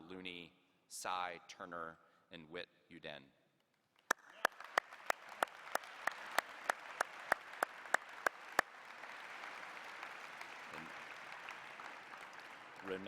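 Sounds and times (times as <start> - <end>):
nearby hands clapping sharply: 4.0 - 13.0
audience applauding: 4.1 - 13.0.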